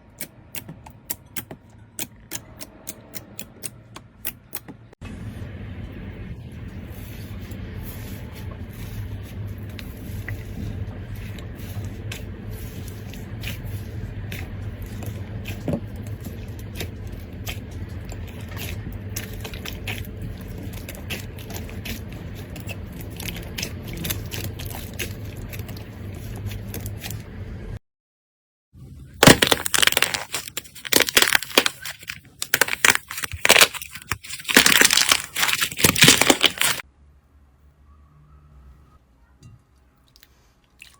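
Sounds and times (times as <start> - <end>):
steady low hum: 5.0 - 27.8
slime crackling and popping: 29.2 - 36.8.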